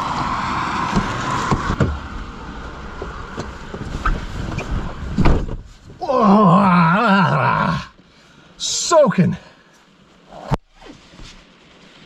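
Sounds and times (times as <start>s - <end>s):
tyres hissing on wet road: 0.0s - 4.9s
knocks and thump: 0.9s - 2.0s, 3.0s - 6.0s
heavy rain: 6.0s - 9.6s.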